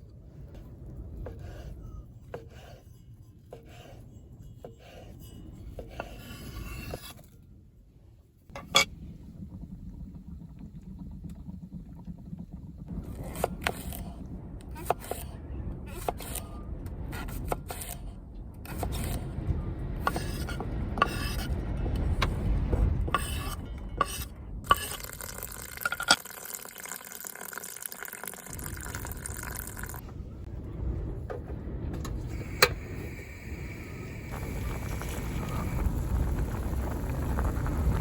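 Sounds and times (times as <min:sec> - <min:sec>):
low wind rumble: 0:00.0 - 0:26.1, 0:28.5 - 0:38.0
liquid-like hiss: 0:32.2 - 0:38.0.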